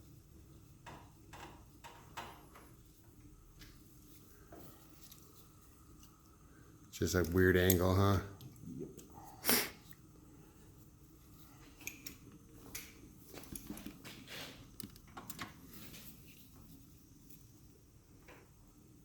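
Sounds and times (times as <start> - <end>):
faint clicks and taps of tools: 0.8 - 3.8, 11.6 - 14.2.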